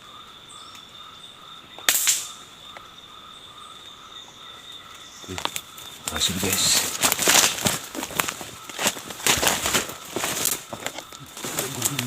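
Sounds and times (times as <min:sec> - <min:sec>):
rustling: 0:05.3 - 0:12.0.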